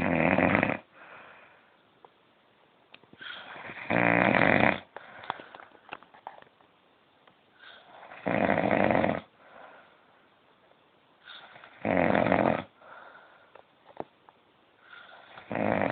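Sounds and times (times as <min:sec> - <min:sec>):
man snoring: 0:00.0 - 0:00.9, 0:03.3 - 0:04.9, 0:08.0 - 0:09.3, 0:11.4 - 0:12.7, 0:15.3 - 0:15.9
quiet breathing: 0:00.8 - 0:02.0, 0:03.1 - 0:06.4, 0:07.5 - 0:08.3, 0:09.2 - 0:14.1, 0:14.7 - 0:15.9.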